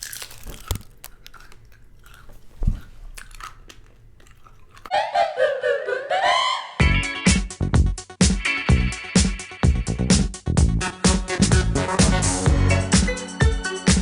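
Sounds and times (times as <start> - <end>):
gum chewing mouth clicks: 0.0 - 4.9.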